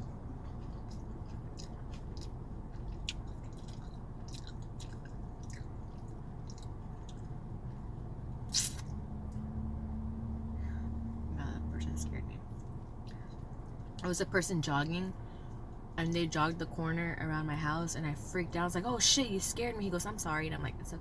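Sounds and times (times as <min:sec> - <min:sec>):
person chewing food: 0:00.0 - 0:09.4, 0:12.5 - 0:14.0
wet mouth clicks and smacks: 0:00.4 - 0:07.4, 0:08.5 - 0:08.9.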